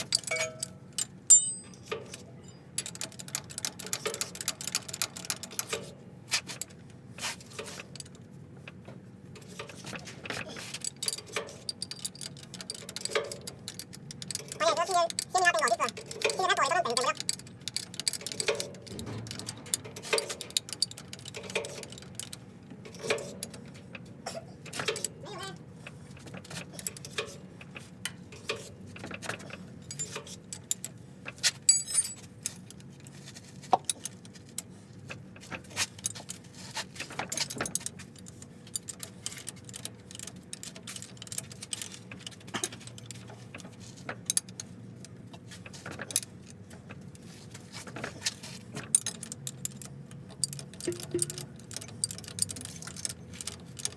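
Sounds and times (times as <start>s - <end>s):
hand tools clinking on metal: 0.0s - 5.8s, 10.6s - 22.3s, 31.7s - 32.8s, 48.8s - 53.9s
ringing metal clanks: 0.2s - 2.0s, 50.5s - 52.6s
low steady hum: 31.7s - 32.6s.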